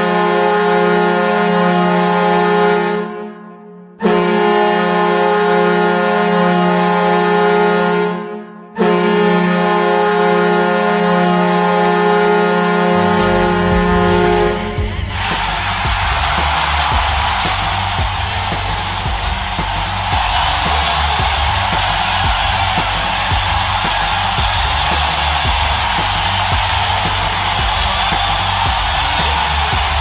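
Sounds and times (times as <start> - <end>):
goal horn blasts: 0.0 - 15.3.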